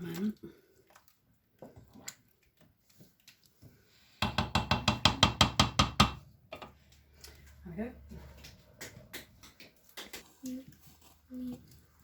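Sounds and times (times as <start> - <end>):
rapid sharp knocks: 4.2 - 6.2.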